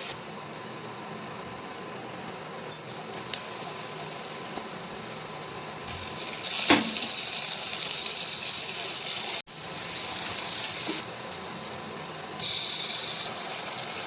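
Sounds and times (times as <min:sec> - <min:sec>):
water running from a tap: 0:12.4 - 0:14.0.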